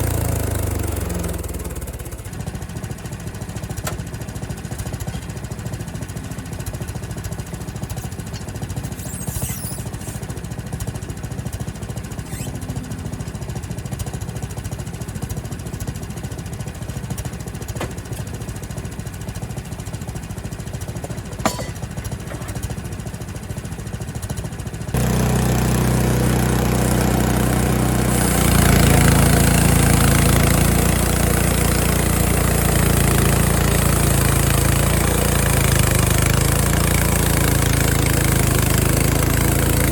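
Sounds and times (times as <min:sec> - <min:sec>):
small gasoline engine running: 0:00.0 - 0:39.9.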